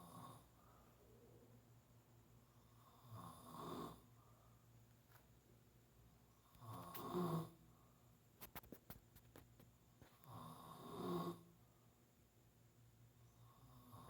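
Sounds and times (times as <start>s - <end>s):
man snoring: 2.8s - 4.0s, 6.6s - 7.5s, 10.3s - 11.4s.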